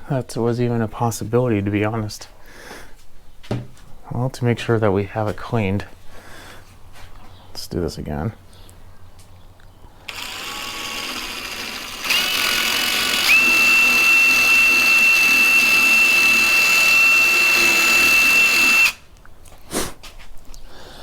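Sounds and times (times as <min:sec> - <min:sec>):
power drill whining: 0:10.1 - 0:19.0.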